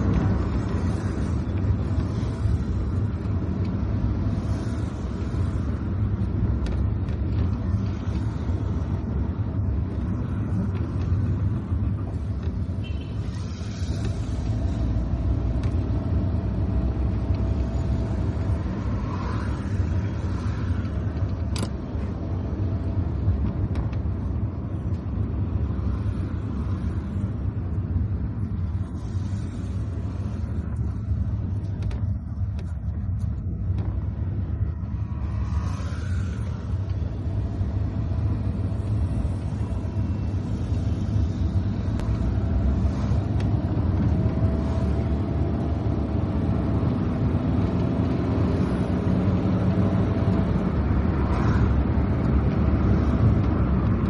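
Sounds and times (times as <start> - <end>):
car driving on wet road: 0.0 - 54.0.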